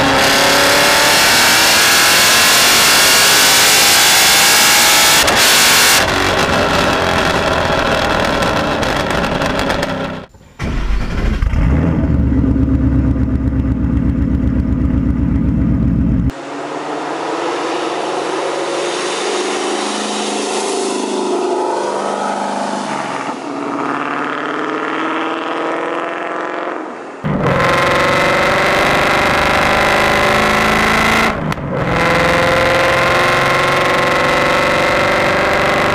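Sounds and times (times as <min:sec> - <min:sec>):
car engine revving: 0:00.0 - 0:35.9
deep exhaust rumble: 0:06.0 - 0:25.4.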